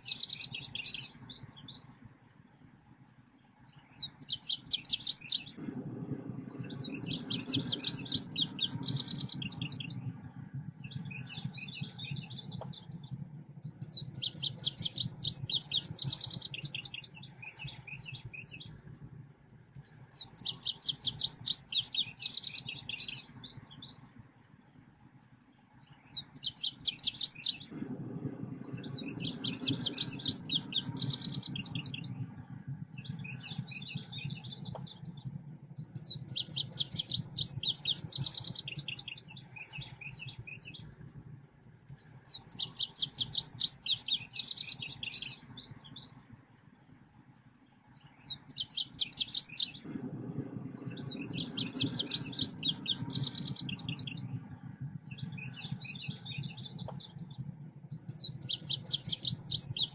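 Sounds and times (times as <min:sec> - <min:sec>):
low steady hum: 0:00.0 - 0:59.9
fast high bird chirping: 0:50.8 - 0:54.3.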